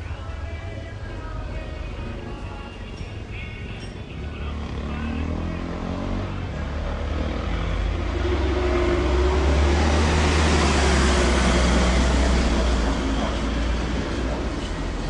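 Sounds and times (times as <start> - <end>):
vehicle passing: 3.2 - 15.0.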